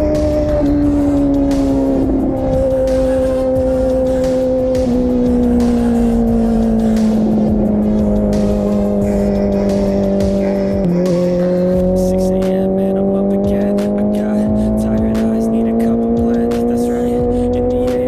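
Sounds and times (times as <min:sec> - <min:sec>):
low wind rumble: 0:00.0 - 0:10.9
motorcycle engine revving: 0:00.0 - 0:18.0.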